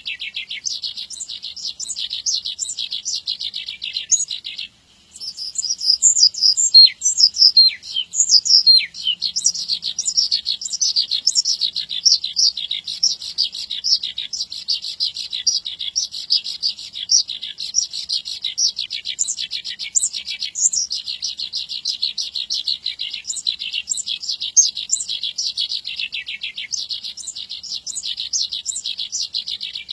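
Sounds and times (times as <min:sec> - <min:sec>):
lark singing chirps and trills: 0:00.0 - 0:29.9.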